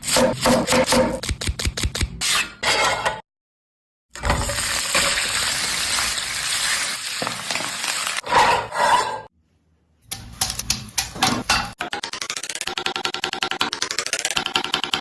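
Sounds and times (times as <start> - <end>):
food sizzling in a pan: 4.6 - 8.2
utensil scraping a pan: 8.2 - 9.3.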